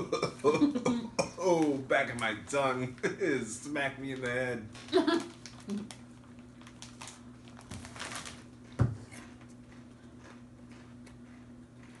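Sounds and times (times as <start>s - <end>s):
steady low hum: 0.0s - 12.0s
snack crunching and rustling: 4.2s - 12.0s.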